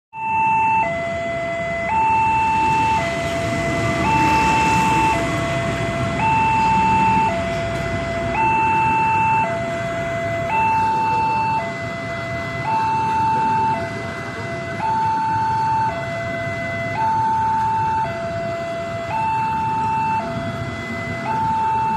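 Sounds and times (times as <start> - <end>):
level crossing alarm two-tone signal: 0.1 - 7.5, 8.1 - 16.2.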